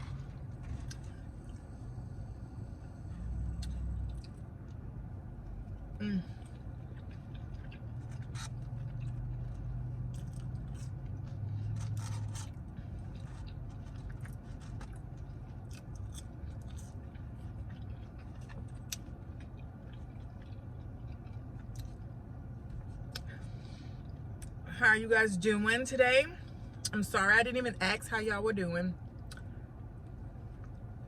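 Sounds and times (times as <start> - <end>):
steady low hum: 0.0 - 31.0
person chewing: 3.3 - 4.8, 6.2 - 23.4.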